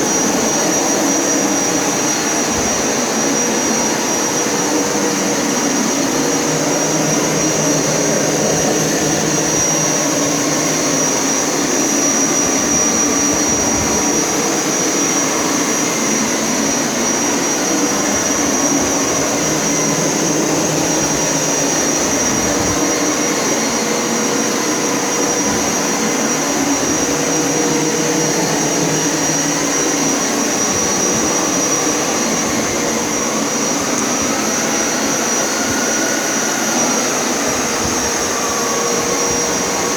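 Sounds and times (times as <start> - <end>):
carpet cleaner running: 0.0 - 39.9.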